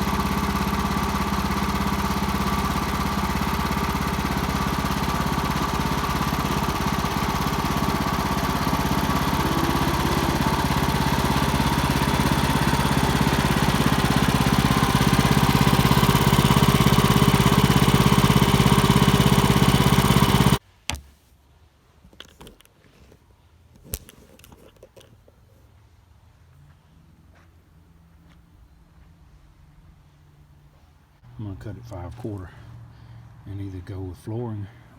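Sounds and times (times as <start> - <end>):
sawmill engine running: 0.0 - 21.0.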